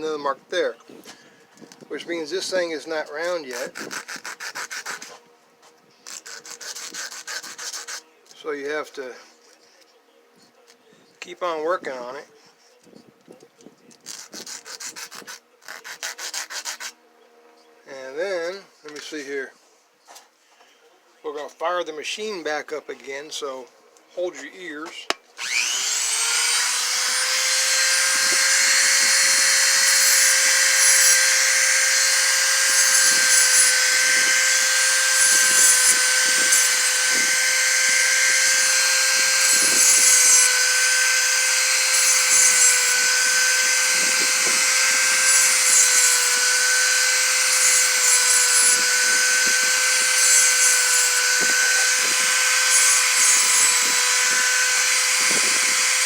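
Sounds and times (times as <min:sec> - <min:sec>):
bit grinding metal: 0:25.4 - 0:56.0
rotary tool high whine: 0:25.4 - 0:56.0.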